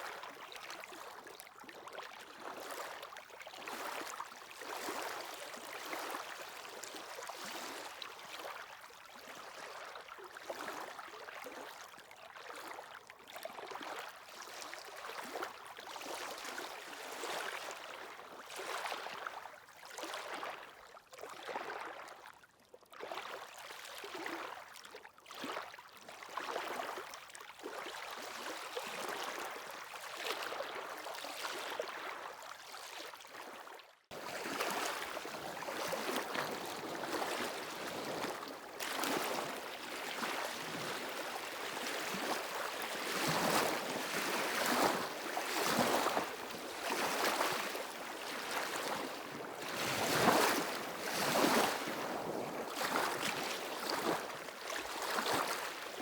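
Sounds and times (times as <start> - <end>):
waves lapping at shore: 2.3 - 11.0, 34.1 - 56.0.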